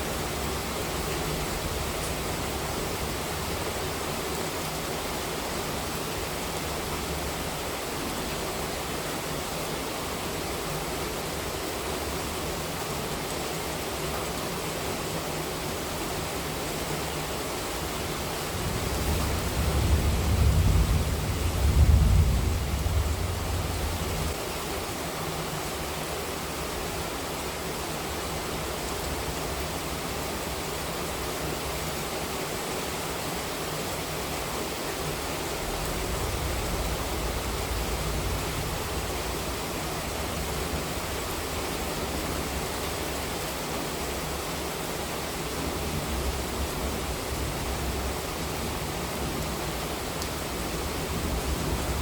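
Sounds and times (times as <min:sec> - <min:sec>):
heavy rain falling: 0:00.0 - 0:52.0
low thunder rumble: 0:18.4 - 0:24.4, 0:35.7 - 0:41.5, 0:50.5 - 0:52.0.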